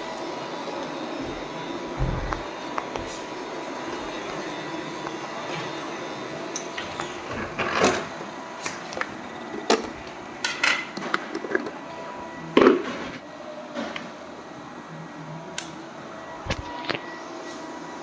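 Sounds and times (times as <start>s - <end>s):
robot vacuum whirring: 0.0s - 10.4s.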